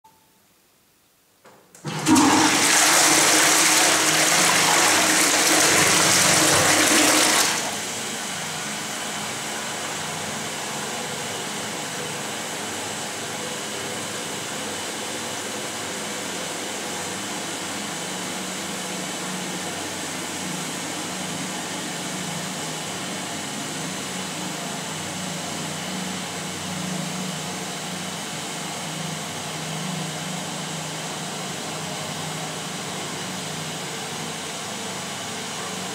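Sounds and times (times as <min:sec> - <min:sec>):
water hissing as tank refills: 0:01.8 - 0:08.0
toilet flushing: 0:01.8 - 0:08.4.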